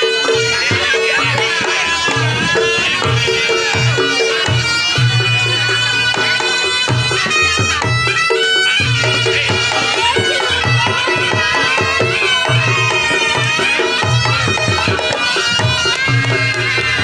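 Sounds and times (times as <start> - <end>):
drums: 0.0 - 17.0
shrill shawm melody: 0.0 - 17.0.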